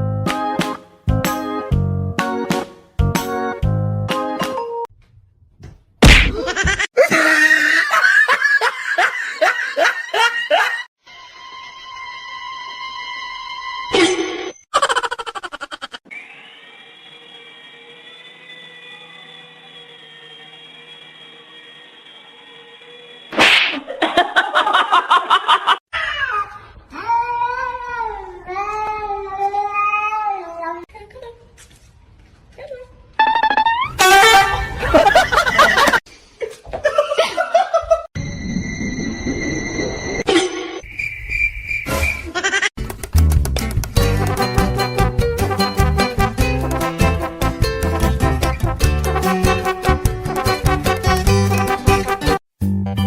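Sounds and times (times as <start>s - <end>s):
loud smack: 6.0s - 6.5s, 23.3s - 23.8s
rapid laugh-like cries: 6.4s - 10.9s, 14.7s - 16.1s.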